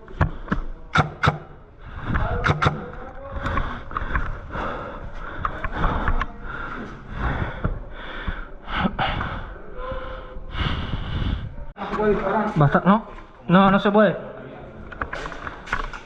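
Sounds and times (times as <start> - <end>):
person breathing hard: 1.8 - 11.8.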